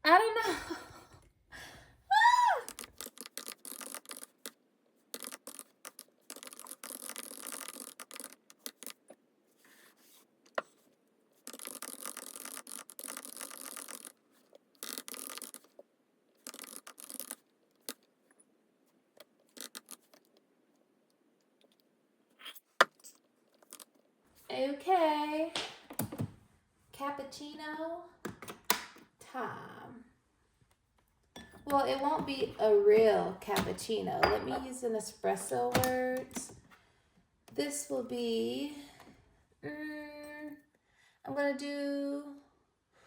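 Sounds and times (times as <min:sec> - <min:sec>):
scraping and rubbing: 0:02.7 - 0:15.8, 0:16.4 - 0:18.1, 0:19.2 - 0:20.4.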